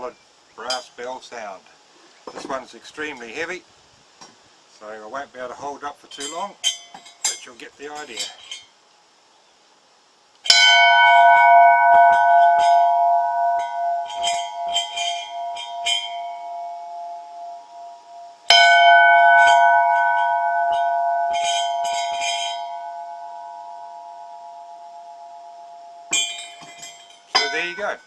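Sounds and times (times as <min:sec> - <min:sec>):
brass bell ringing: 0:10.5 - 0:28.0.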